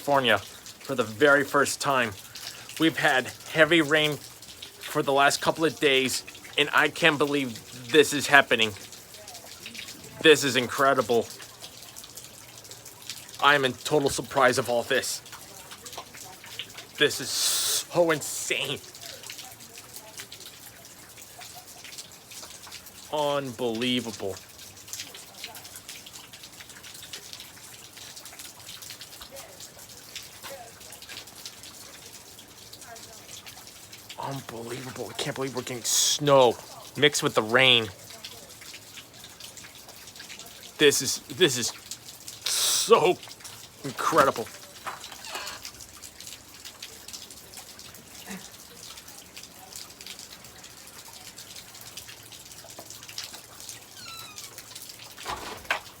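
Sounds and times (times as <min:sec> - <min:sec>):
drops dripping on surfaces: 0:00.0 - 0:56.0
heavy rain and snow falling: 0:00.0 - 0:56.0
squeak falling in pitch: 0:54.0 - 0:54.6.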